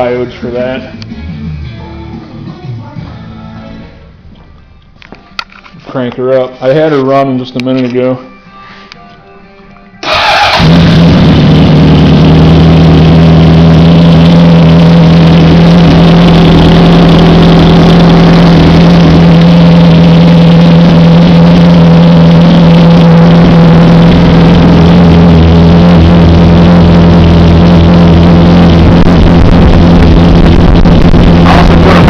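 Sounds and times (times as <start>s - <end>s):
motorcycle engine idling: 10.1s - 32.0s.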